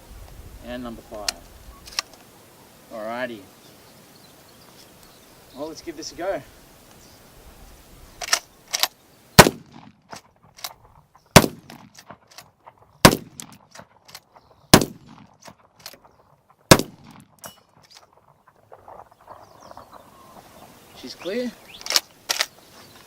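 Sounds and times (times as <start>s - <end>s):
shotgun shots: 8.2s - 10.2s, 11.4s - 12.3s, 13.0s - 13.8s, 14.7s - 15.4s, 16.7s - 17.4s.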